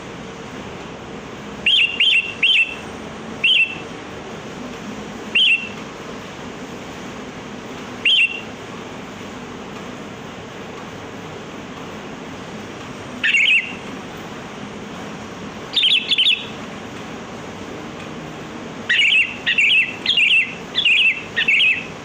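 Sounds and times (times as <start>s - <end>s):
bird chirping: 1.6s - 3.9s, 5.3s - 5.8s, 8.0s - 8.5s, 13.2s - 13.8s, 15.7s - 16.6s, 18.8s - 22.0s.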